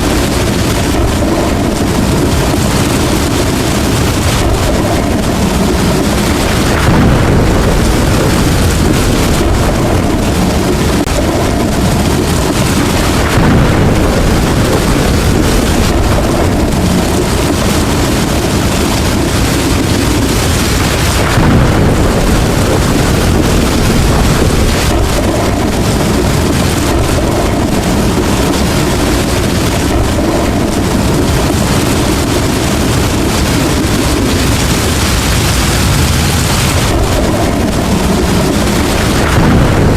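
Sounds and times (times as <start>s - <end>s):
heavy rain pouring: 0.0s - 39.9s
thunder rumbling: 0.0s - 39.9s.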